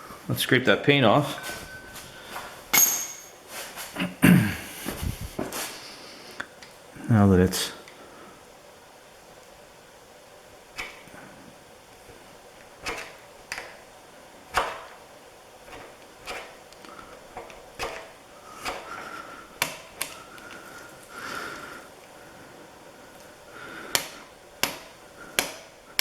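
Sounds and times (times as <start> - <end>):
tool scraping paint off metal: 12.8 - 13.8, 14.5 - 20.2.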